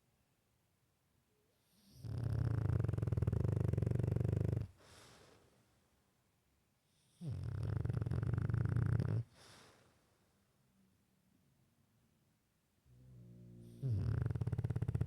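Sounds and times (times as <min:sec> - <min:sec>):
dog snoring: 0:01.7 - 0:05.4, 0:06.9 - 0:09.8, 0:12.9 - 0:15.0
soft breath: 0:04.7 - 0:05.9, 0:09.3 - 0:10.4.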